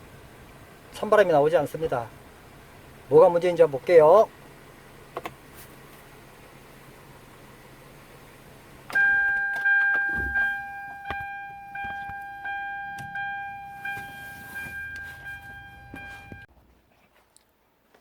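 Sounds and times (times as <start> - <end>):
car engine idling: 0.0 - 16.5
car warning chime: 8.9 - 16.5.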